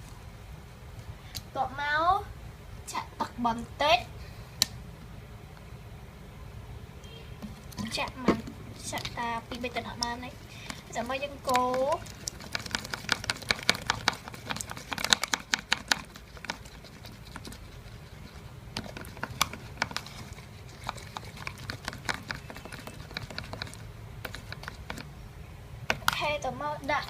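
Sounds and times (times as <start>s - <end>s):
stirrer tapping against container: 7.4s - 25.1s, 25.9s - 26.2s.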